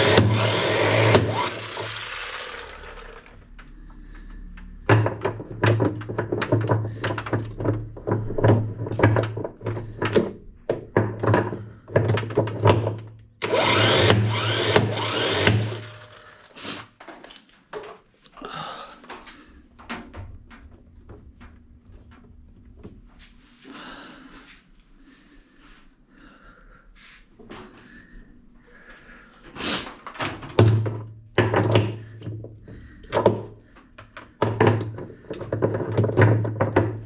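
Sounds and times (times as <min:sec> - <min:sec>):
electric motor whirring: 0:00.0 - 0:03.3, 0:13.4 - 0:16.4.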